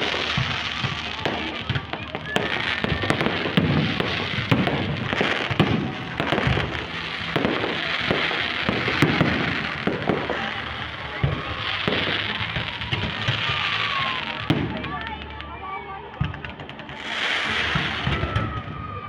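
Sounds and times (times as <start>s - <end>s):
fireworks bangs: 0.0s - 19.0s
fireworks crackling: 0.0s - 19.0s.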